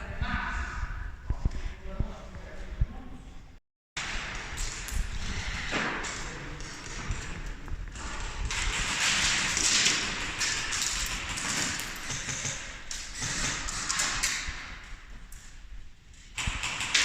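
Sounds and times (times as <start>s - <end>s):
scattered taps and thumps: 4.6s - 14.5s.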